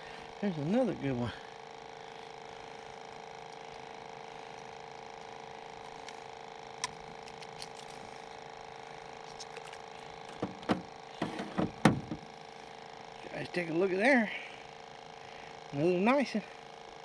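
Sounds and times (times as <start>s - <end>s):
sharp knocks: 10.4s - 12.2s.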